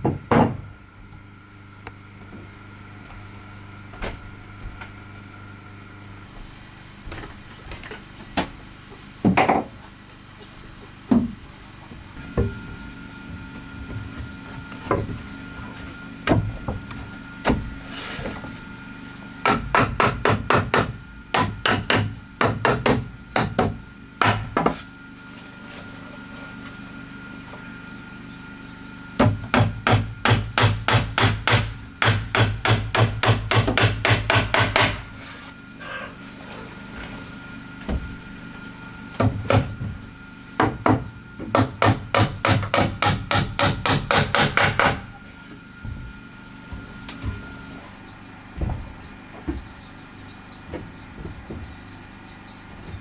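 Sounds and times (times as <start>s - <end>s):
hammer striking wood: 0.0s - 0.6s, 19.4s - 24.8s, 29.2s - 35.1s, 39.2s - 39.8s, 40.6s - 45.1s.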